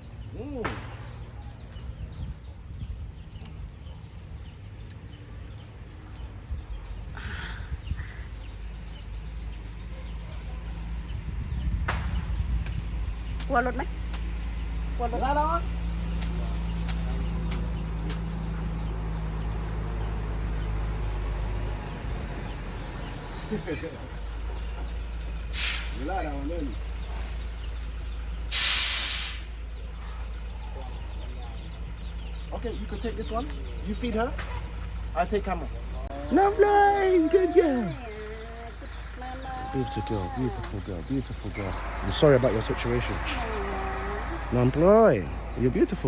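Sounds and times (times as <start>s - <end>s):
idling car engine hum: 0.0s - 28.6s, 29.3s - 46.0s
bird chirps: 0.0s - 46.0s
steady low rumble: 10.3s - 20.6s
sharp clicks: 16.1s - 18.4s.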